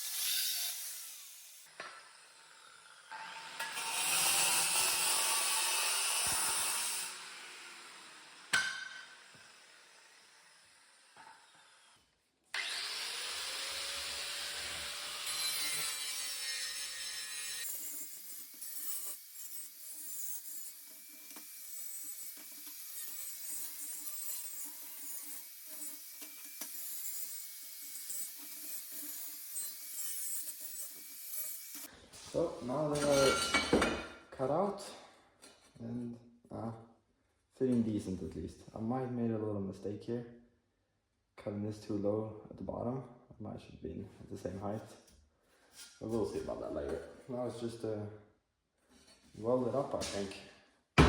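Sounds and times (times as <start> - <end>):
angle grinder cutting steel: 0.0 - 12.0, 12.6 - 31.9.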